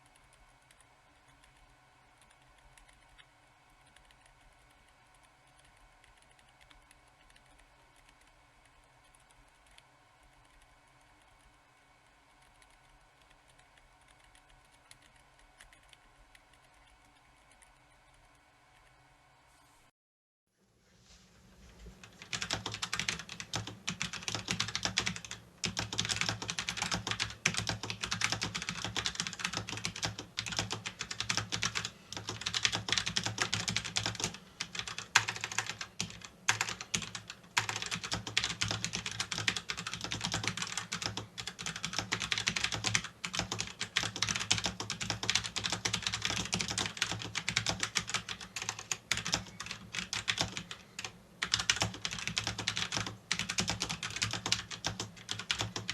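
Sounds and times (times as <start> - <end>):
faint low hum: 0.0 - 19.9, 20.5 - 55.9
typing on computer keyboard: 2.2 - 9.8, 22.0 - 55.9.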